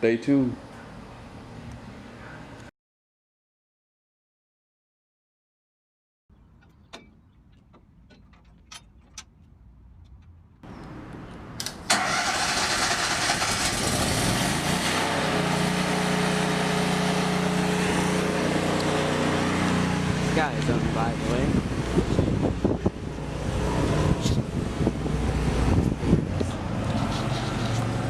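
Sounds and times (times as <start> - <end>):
engine starting and running: 11.5 - 28.0.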